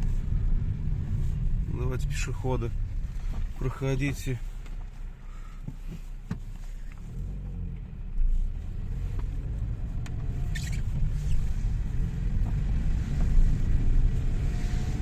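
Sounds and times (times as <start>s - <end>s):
road and drivetrain rumble: 0.0s - 15.0s
brief high squeak: 10.5s - 11.4s.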